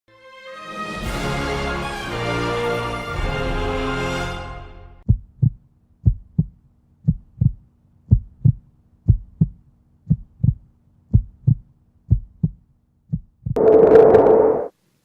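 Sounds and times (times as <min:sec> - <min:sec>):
heartbeat thumps: 0:05.1 - 0:13.6
faint hum: 0:13.6 - 0:14.7.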